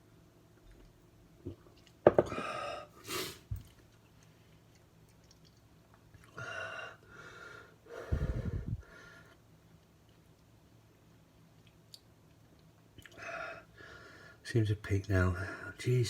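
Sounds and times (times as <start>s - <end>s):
man gasping and blowing out: 8.0s - 9.0s.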